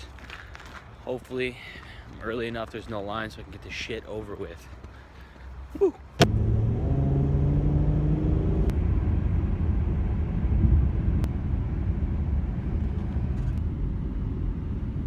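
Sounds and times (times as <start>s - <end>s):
car engine and road rumble: 6.1s - 15.0s
engine tones: 6.2s - 14.3s.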